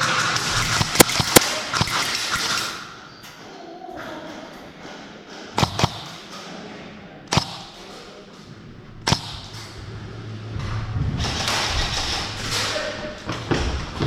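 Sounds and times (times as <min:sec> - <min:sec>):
airsoft gun shots: 0:05.6 - 0:06.2, 0:07.3 - 0:07.8, 0:09.0 - 0:09.6
low hum: 0:08.6 - 0:13.3.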